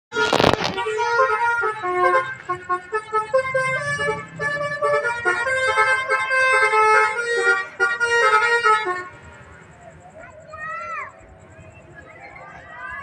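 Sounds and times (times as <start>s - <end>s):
multi-tone air horn playing melody: 0.1s - 9.6s.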